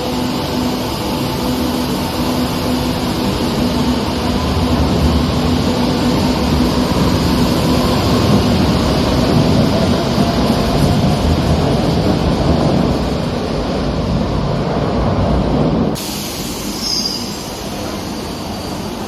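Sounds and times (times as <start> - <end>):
train wheels rumbling on rail: 0.0 - 19.0
high squeal: 16.7 - 19.0.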